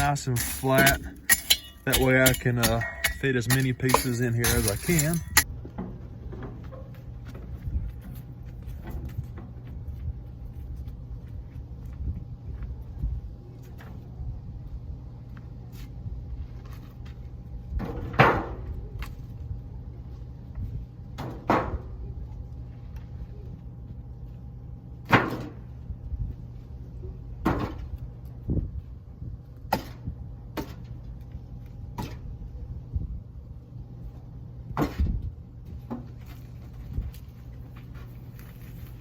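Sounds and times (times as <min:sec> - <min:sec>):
steady low hum: 0:00.0 - 0:05.4.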